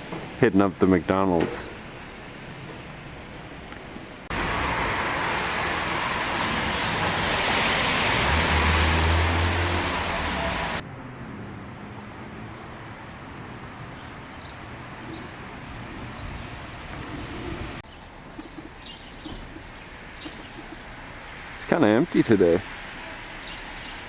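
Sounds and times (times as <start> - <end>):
vehicle engine hum: 1.8 - 21.6
tyres hissing on wet road: 4.3 - 10.8, 19.7 - 24.0.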